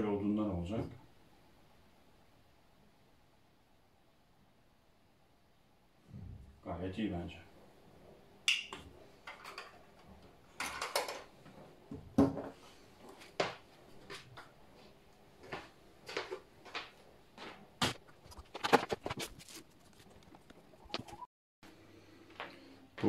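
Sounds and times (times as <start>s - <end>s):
objects knocking and clunking: 8.5s - 12.6s.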